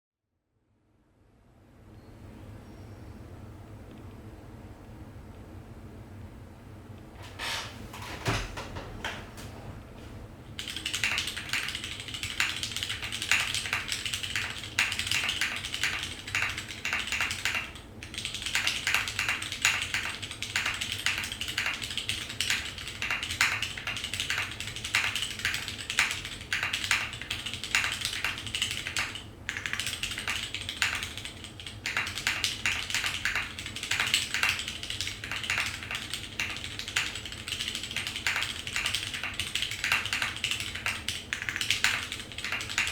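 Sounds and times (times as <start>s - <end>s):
mechanical keyboard typing: 10.5s - 42.9s.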